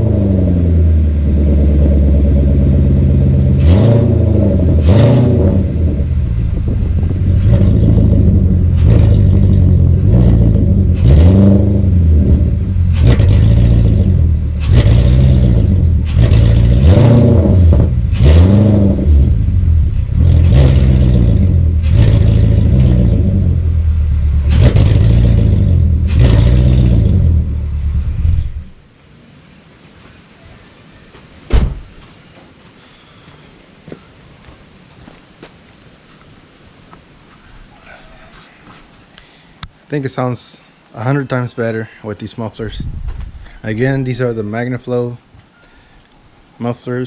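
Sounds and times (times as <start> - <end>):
car engine revving: 0.0 - 28.8.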